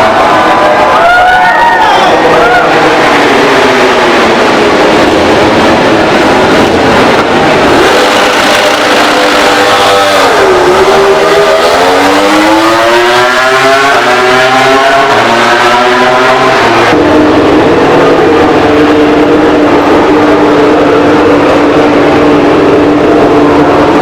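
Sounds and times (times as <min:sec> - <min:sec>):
racing motorcycle engine revving: 0:00.0 - 0:24.0.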